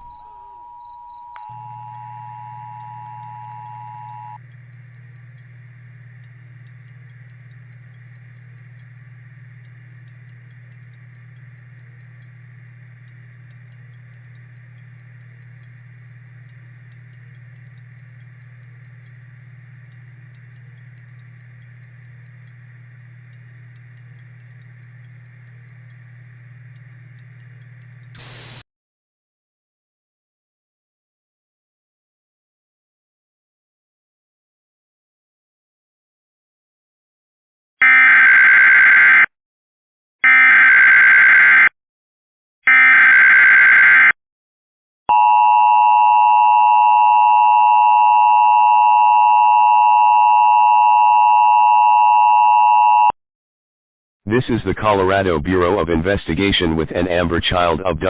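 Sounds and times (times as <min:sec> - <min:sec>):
low hum with hiss: 0:00.0 - 0:28.6, 0:54.3 - 0:58.0
burst of noise: 0:28.2 - 0:28.6.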